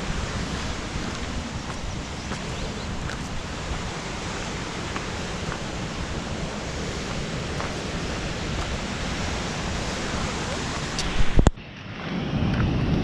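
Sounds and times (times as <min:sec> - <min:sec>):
water rushing over rocks: 0:00.0 - 0:11.6.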